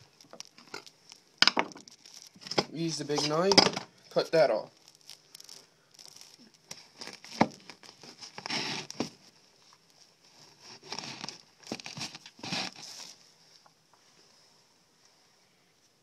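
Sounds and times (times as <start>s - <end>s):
skin and joint tearing: 0.0s - 2.6s, 4.7s - 9.2s, 10.4s - 13.1s.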